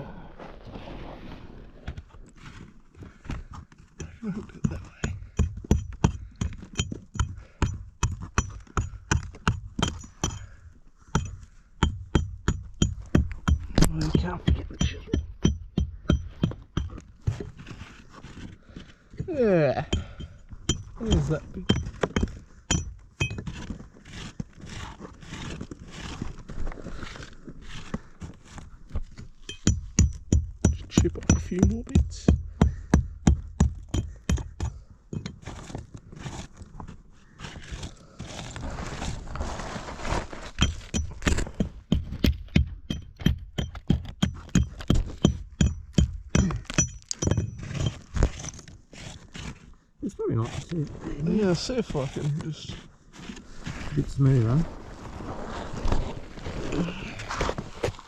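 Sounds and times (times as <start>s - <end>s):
hammer chipping rock: 3.9s - 17.5s, 18.4s - 26.2s, 29.4s - 36.4s, 40.6s - 49.5s
metal tool clinking on rock: 5.4s - 10.6s, 19.9s - 23.5s, 29.4s - 31.7s, 42.9s - 48.6s.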